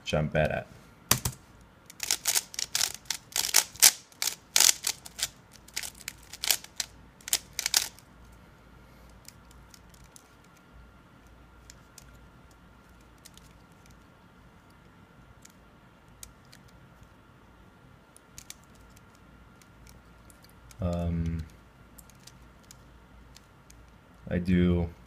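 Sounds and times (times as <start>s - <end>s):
puzzle cube layers clicking: 1.9s - 8.0s, 18.3s - 23.8s.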